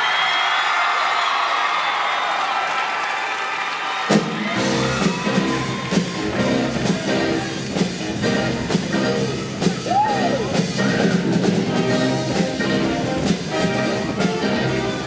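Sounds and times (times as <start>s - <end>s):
live band playing rock: 4.1s - 15.0s.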